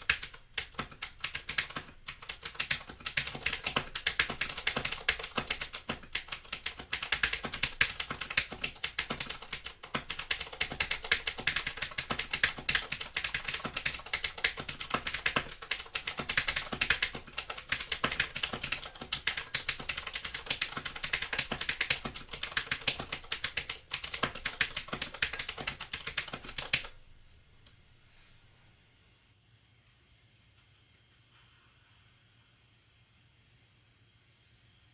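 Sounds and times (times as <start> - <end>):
fast typing on mechanical keyboard: 0.0 - 27.0.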